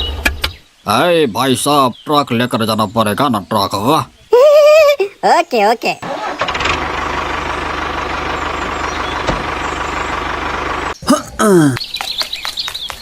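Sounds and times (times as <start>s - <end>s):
truck engine idling: 6.0s - 11.1s.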